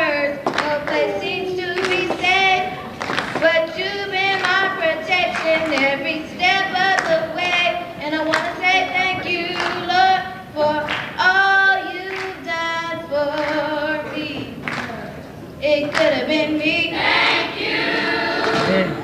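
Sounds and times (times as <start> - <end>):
gospel choir singing: 0.0 - 14.2, 15.7 - 19.0.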